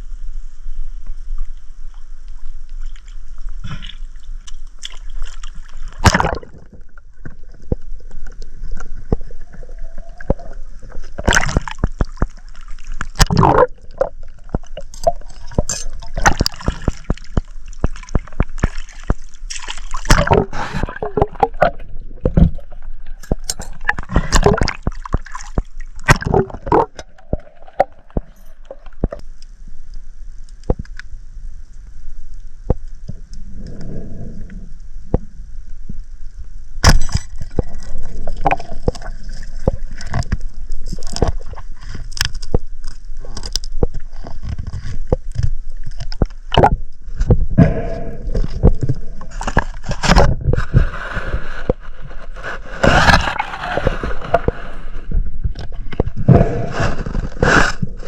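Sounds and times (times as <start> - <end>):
water sloshing and gurgling: 0.9 - 30.0, 32.7 - 58.0
water splashes: 2.7 - 29.2, 36.8 - 54.9.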